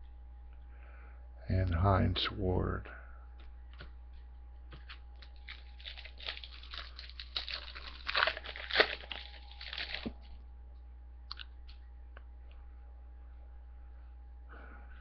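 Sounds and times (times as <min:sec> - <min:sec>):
foil wrapper tearing and crinkling: 0:05.2 - 0:10.3.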